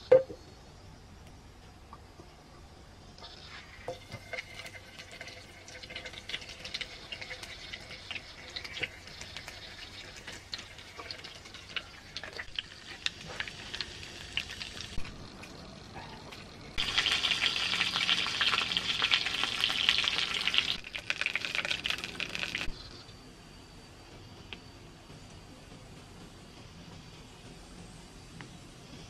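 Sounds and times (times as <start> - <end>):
food sizzling in a hot pan: 3.2 - 15.6, 16.8 - 22.7.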